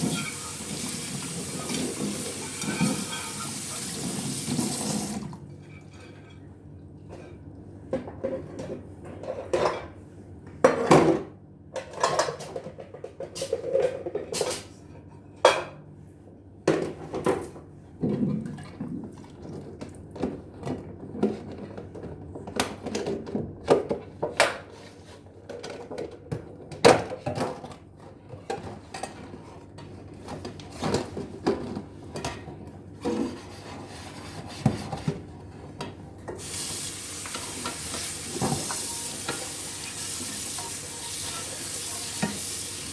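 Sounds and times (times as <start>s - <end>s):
dishes and cutlery clinking: 36.4s - 42.9s.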